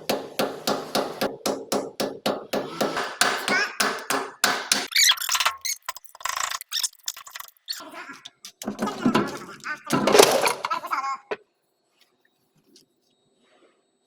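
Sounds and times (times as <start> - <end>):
hammer striking metal: 0.0 - 4.9
high squeak: 4.8 - 6.9.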